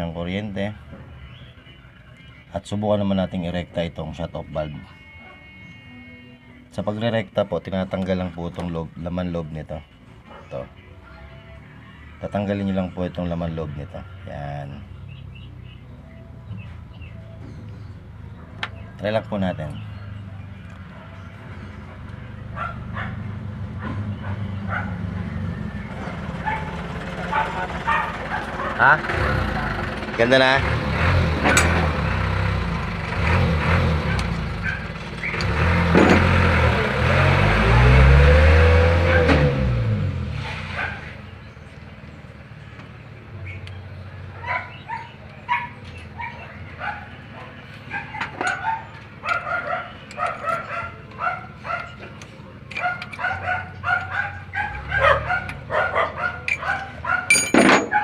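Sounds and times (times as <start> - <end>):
dog yelping: 5.2 - 5.5, 10.3 - 10.6, 22.5 - 25.0, 26.0 - 29.0, 34.6 - 35.4, 40.4 - 41.2, 44.3 - 52.0, 52.7 - 58.0
diesel engine running: 19.7 - 58.0.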